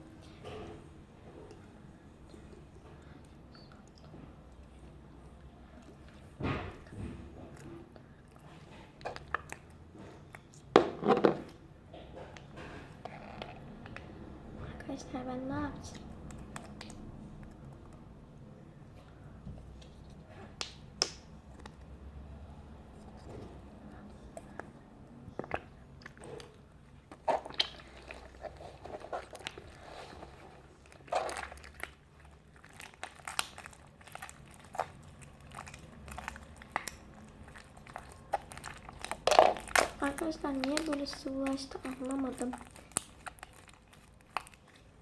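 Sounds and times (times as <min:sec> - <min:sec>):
slime squishing: 0:00.0 - 0:45.0
sticky slime pulling: 0:22.7 - 0:45.0.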